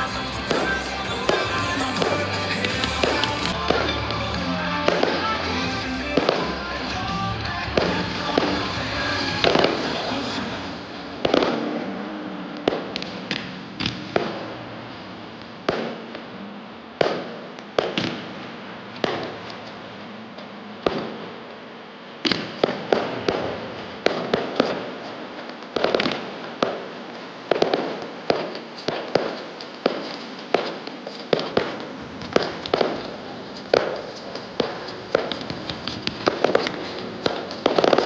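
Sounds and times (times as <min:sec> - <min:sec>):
fireworks bangs with echo: 0:00.0 - 0:04.0, 0:04.6 - 0:16.4, 0:17.0 - 0:19.9, 0:22.2 - 0:38.0
music over loudspeakers: 0:00.0 - 0:10.9.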